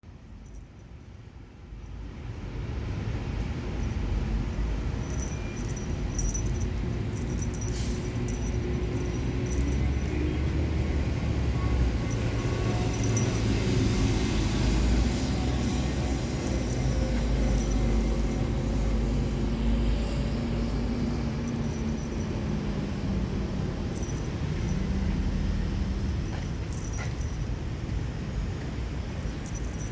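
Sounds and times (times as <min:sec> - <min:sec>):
light clicks and rattles: 0:03.4 - 0:10.3, 0:16.4 - 0:18.8, 0:23.8 - 0:27.7, 0:28.6 - 0:29.9.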